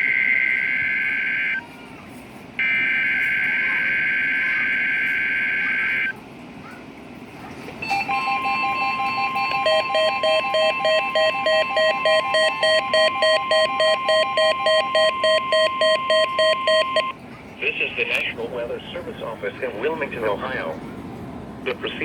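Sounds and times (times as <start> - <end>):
steady warning alarm tone: 0.0 - 1.6, 2.6 - 6.2, 7.8 - 17.2
pulsing beep: 7.8 - 17.1.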